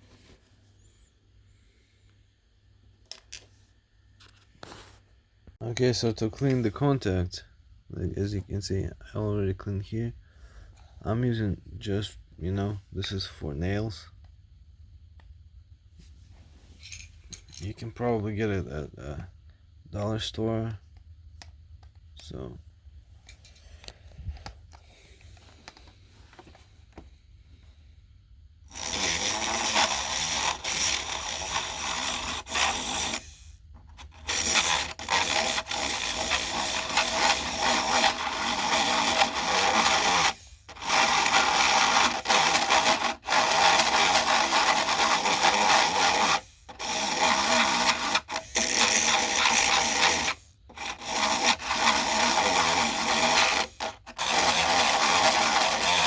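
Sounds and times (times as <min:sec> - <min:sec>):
nail file scraping metal: 0:28.7 - 0:56.0.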